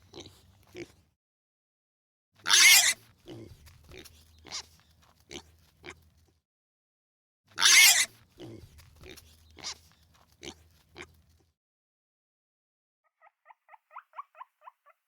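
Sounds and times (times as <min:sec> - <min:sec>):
pig grunting: 0:00.0 - 0:01.0, 0:02.4 - 0:04.7, 0:07.6 - 0:09.8
pig squealing: 0:02.4 - 0:03.0, 0:07.6 - 0:08.2, 0:13.1 - 0:15.0.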